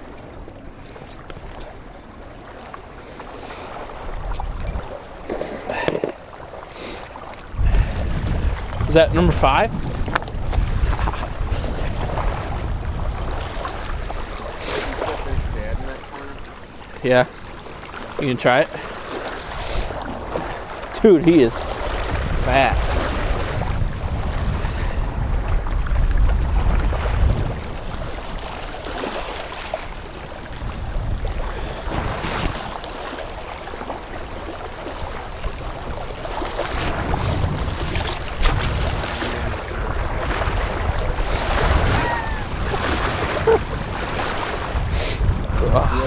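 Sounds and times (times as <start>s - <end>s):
wind buffeting microphone: 7.5s - 16.5s, 19.8s - 46.0s.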